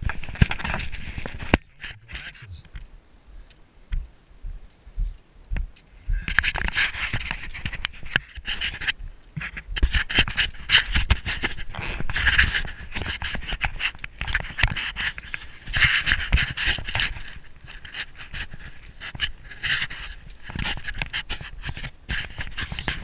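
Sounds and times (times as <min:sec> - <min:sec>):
person breathing hard: 0:06.0 - 0:06.4.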